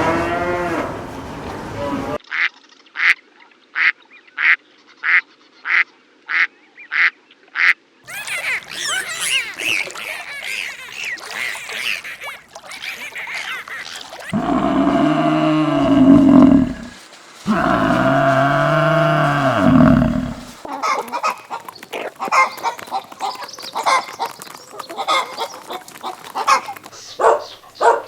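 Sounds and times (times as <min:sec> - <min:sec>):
duck quacks: 0:03.8 - 0:14.3
deep drawn-out animal call: 0:14.3 - 0:20.7.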